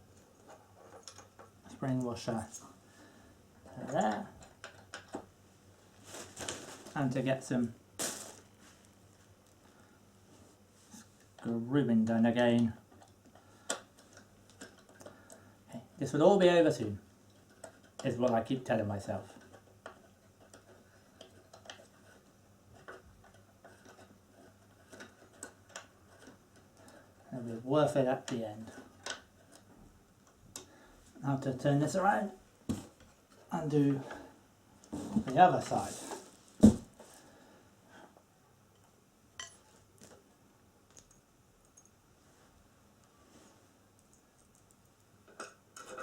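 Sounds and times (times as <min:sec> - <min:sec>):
wooden chair frame knocking down: 0:36.6 - 0:36.9.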